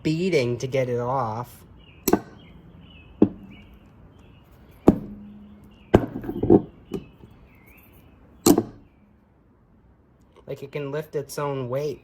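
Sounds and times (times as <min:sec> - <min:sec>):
metallic clacks of magnet handled: 0:02.0 - 0:02.4, 0:08.4 - 0:08.8.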